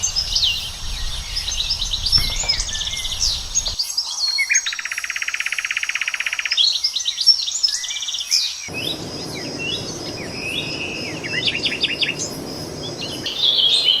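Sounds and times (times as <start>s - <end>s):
songbirds singing: 0.0s - 14.0s
low rushing noise: 8.7s - 14.0s.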